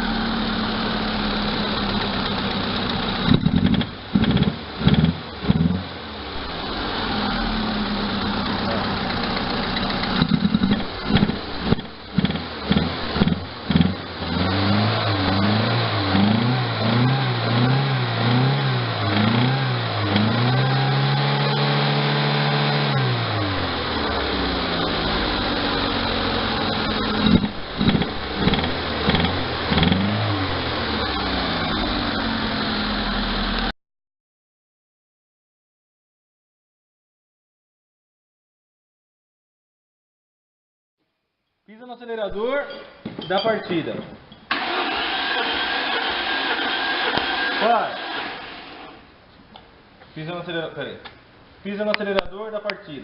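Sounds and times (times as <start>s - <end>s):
car engine revving: 0.0s - 33.7s, 44.5s - 49.1s.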